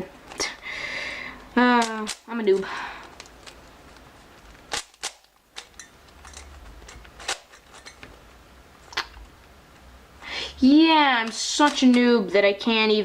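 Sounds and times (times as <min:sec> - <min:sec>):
speed cube clicking: 0:01.6 - 0:07.6, 0:11.2 - 0:12.1.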